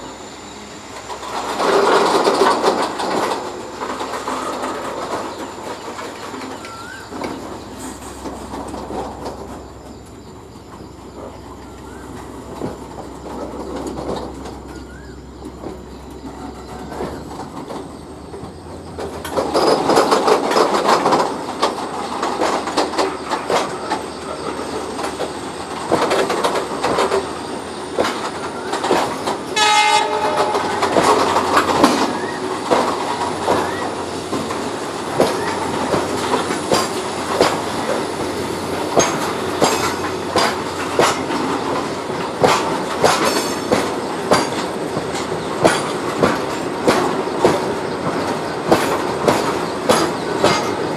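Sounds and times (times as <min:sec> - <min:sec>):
diesel locomotives passing: 0:00.0 - 0:50.9
train wheels clattering over rails: 0:00.0 - 0:50.9
train horn: 0:29.5 - 0:32.2.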